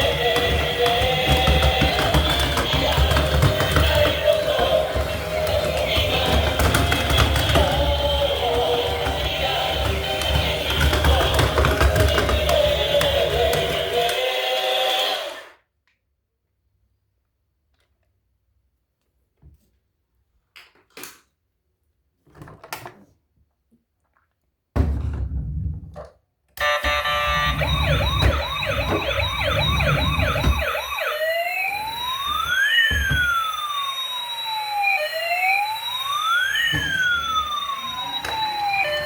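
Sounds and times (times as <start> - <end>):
toy siren warbling and wailing: 0.0 - 15.5, 26.6 - 39.0.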